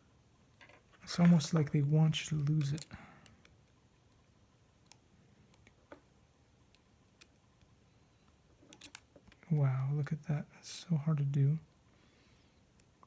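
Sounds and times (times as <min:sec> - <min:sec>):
small screwdriver and screws clicking: 0:08.7 - 0:09.4.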